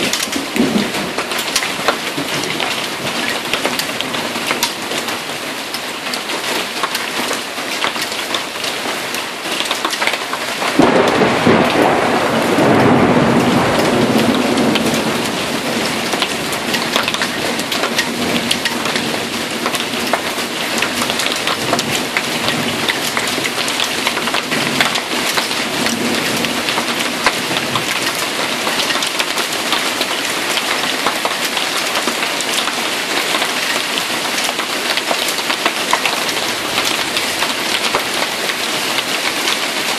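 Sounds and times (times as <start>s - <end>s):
thunder rumbling: 0.0s - 3.2s, 10.6s - 19.8s
hail and heavy rain: 0.0s - 39.9s.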